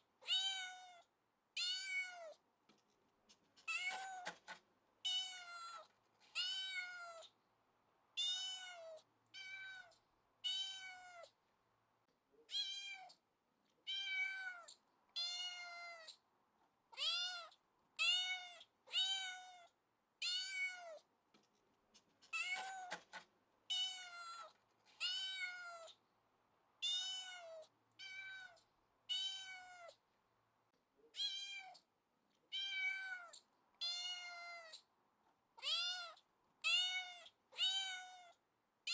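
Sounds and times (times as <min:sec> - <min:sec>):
cat meowing: 0:00.2 - 0:01.0, 0:01.6 - 0:02.4, 0:05.1 - 0:07.3, 0:08.2 - 0:11.3, 0:13.8 - 0:16.2, 0:17.0 - 0:21.0, 0:23.7 - 0:26.0, 0:26.8 - 0:30.0, 0:31.1 - 0:31.8, 0:32.5 - 0:34.8, 0:35.6 - 0:38.9.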